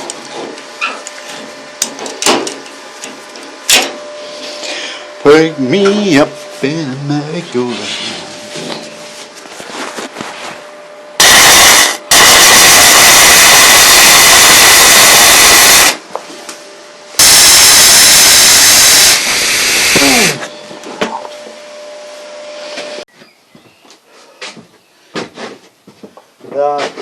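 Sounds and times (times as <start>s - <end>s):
arc welding crackling hiss: 11.2s - 16.0s, 17.2s - 20.2s.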